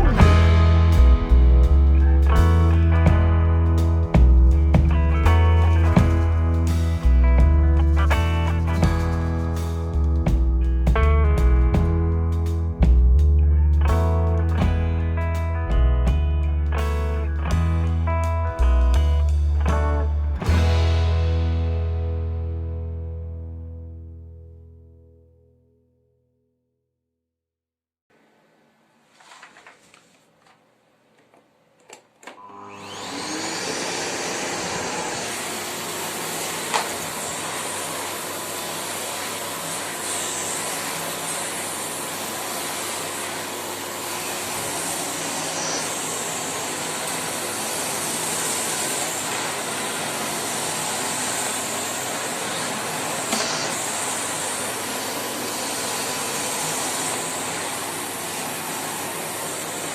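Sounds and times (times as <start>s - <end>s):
vacuum cleaner running: 32.4s - 59.9s.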